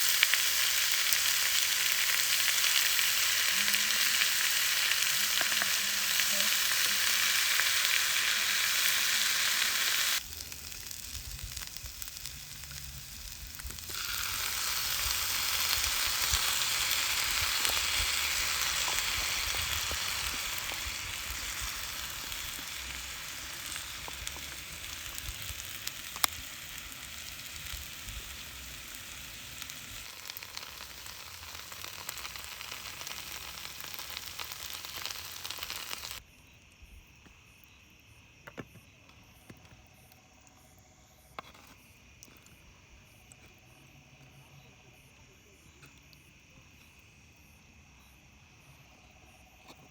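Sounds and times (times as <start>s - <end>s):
food sizzling in a pan: 0.0s - 36.2s.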